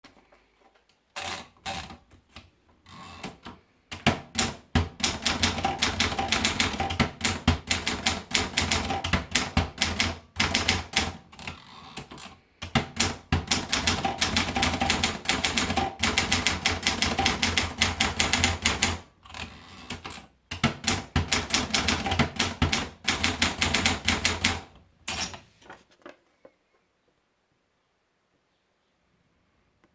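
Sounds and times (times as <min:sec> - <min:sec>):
manual typewriter typing: 0:01.1 - 0:02.2, 0:02.8 - 0:25.5.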